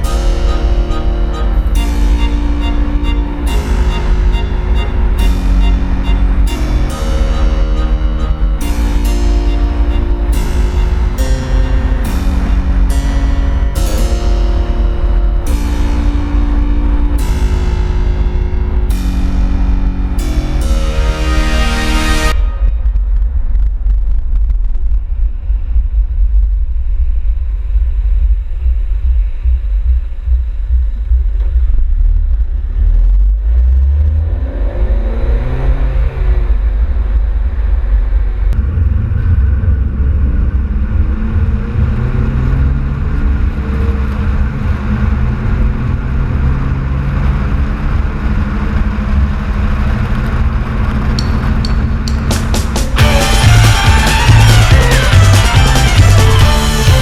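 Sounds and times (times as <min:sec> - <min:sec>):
car engine and exhaust revving: 0:31.5 - 0:57.0.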